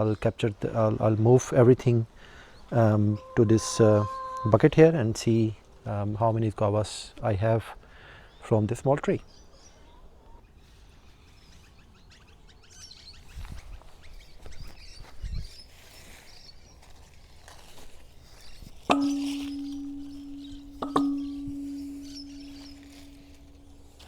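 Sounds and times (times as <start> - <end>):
bucket ringing hum: 2.8 - 4.7, 18.9 - 24.0
faint bird chirps: 18.3 - 24.0.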